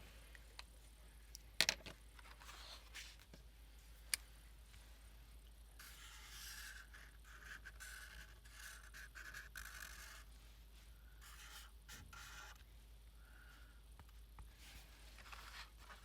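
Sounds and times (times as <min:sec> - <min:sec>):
paper scraping and rubbing: 0:14.7 - 0:16.0.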